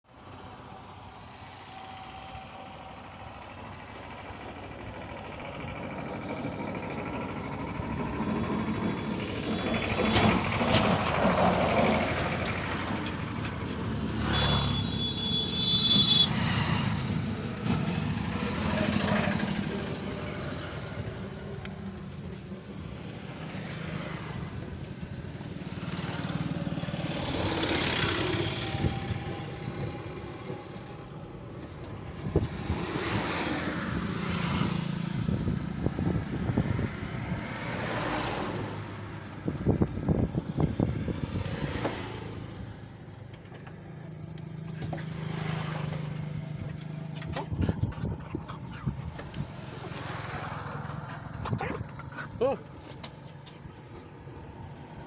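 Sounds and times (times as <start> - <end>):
road vehicles passing: 0.1 - 55.0.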